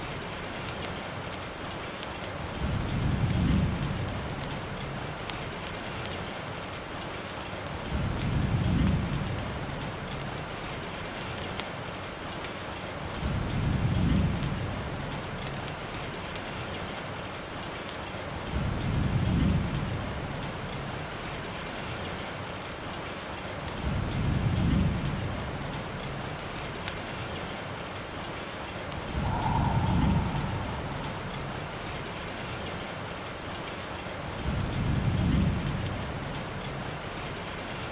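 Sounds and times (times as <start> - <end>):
steady rain: 0.0 - 37.9
low rumble of thunder: 2.4 - 4.8, 7.8 - 10.2, 13.2 - 15.5, 18.5 - 22.0, 23.8 - 26.5, 28.9 - 33.0, 34.3 - 37.5.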